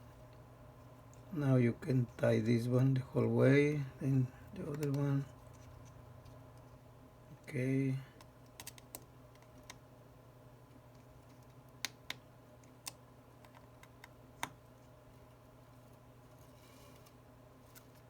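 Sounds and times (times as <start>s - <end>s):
low steady hum: 0.0s - 18.0s
small tools clicking on phone parts: 8.2s - 9.8s.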